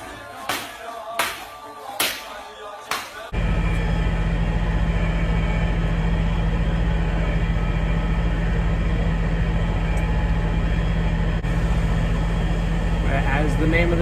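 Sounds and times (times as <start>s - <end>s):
large engine idling: 3.3s - 14.0s.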